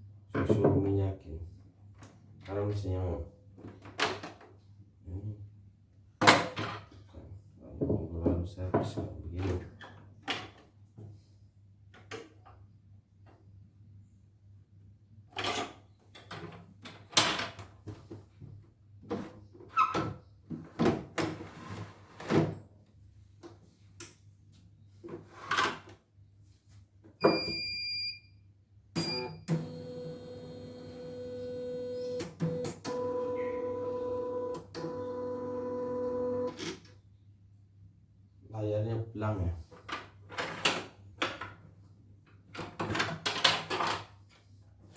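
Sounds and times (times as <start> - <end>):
machine motors whining: 29.5 - 36.6.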